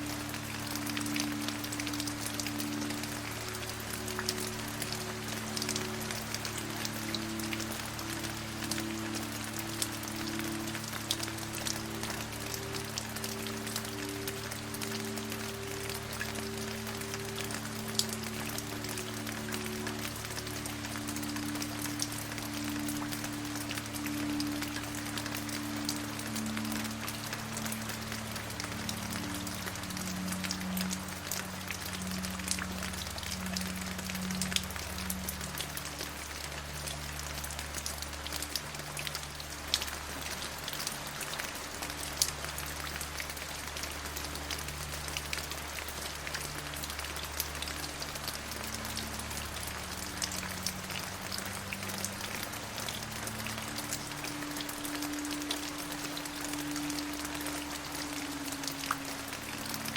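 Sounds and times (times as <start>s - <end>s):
steady rain falling: 0.0s - 59.9s.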